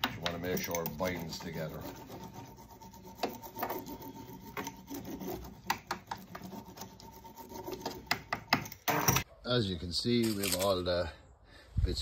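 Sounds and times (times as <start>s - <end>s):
hand roller rubbing and scraping: 0.0s - 9.2s.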